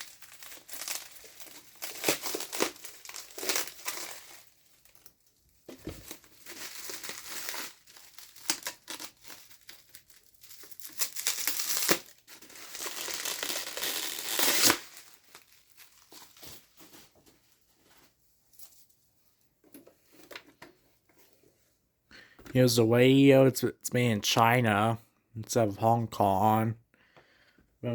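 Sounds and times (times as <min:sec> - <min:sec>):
packaging crinkling and tearing: 0:00.0 - 0:17.1.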